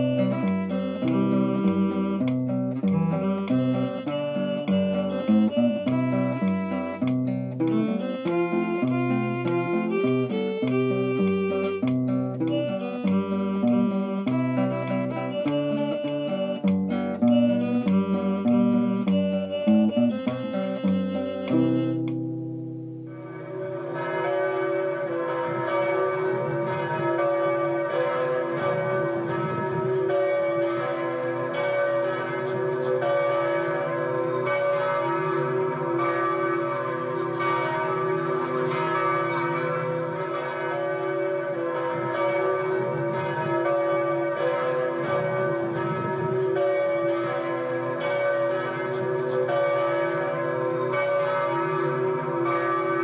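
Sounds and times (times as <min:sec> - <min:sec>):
church bells pealing: 0:00.0 - 0:22.1, 0:23.0 - 0:53.0
instrumental music: 0:00.0 - 0:24.4.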